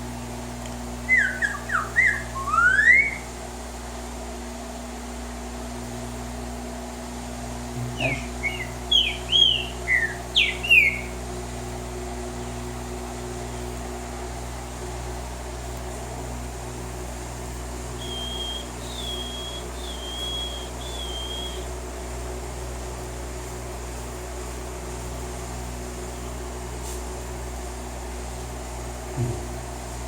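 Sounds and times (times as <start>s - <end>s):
steady mechanical hum: 0.0s - 30.0s
bird whistling short notes: 1.1s - 3.3s, 8.0s - 11.1s, 18.0s - 21.7s.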